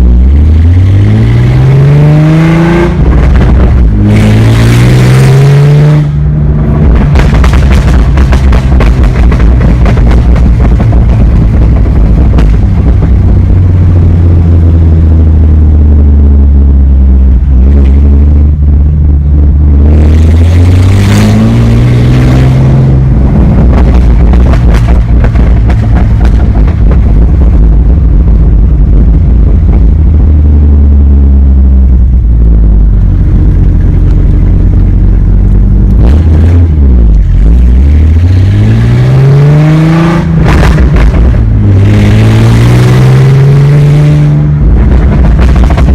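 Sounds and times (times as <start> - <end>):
car exhaust droning: 0.0 - 45.9
exhaust crackles and pops: 0.0 - 45.9.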